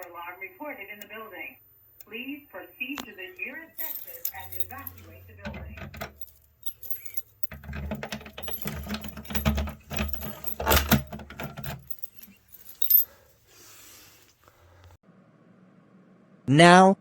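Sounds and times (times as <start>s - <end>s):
keys jangling against metal: 3.8s - 13.2s.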